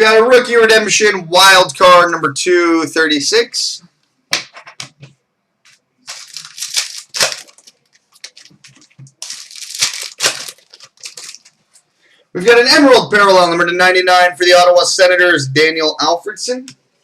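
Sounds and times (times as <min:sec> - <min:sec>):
cards and wrappers crinkling: 0:06.0 - 0:11.6.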